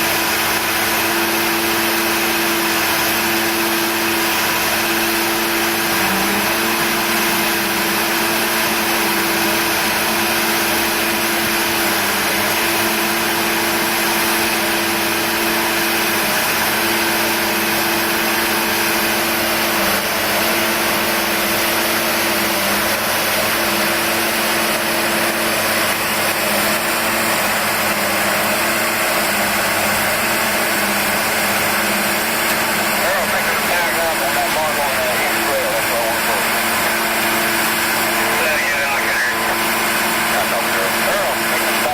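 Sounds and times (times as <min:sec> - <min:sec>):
train engine droning: 0:01.9 - 0:41.9.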